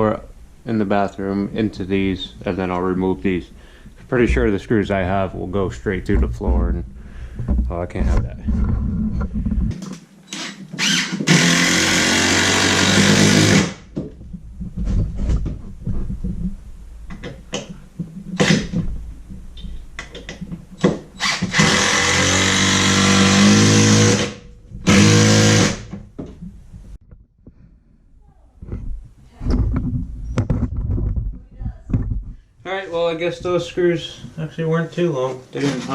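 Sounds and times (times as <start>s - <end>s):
power drill driving screws: 10.3s - 13.8s, 18.4s - 18.8s, 21.2s - 25.9s.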